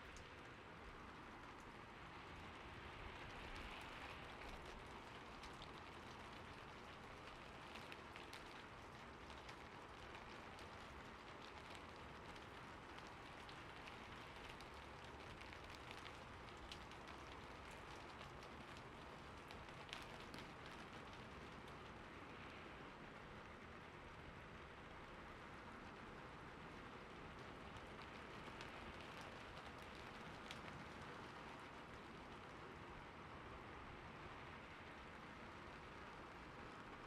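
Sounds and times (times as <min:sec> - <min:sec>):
patter of falling water: 0:00.0 - 0:37.0
small drip ticks: 0:03.2 - 0:21.9, 0:27.3 - 0:32.4.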